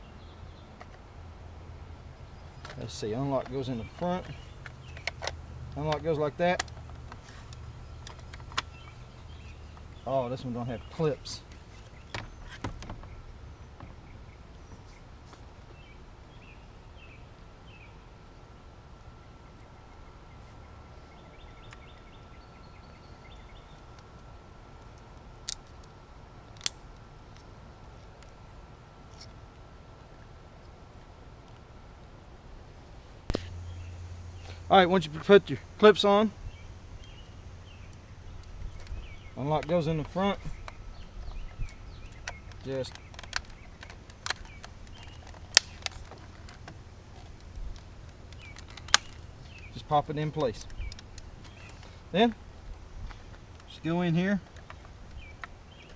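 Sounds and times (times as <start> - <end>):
sharp plastic clicks: 24.8 - 27.0, 39.6 - 51.9.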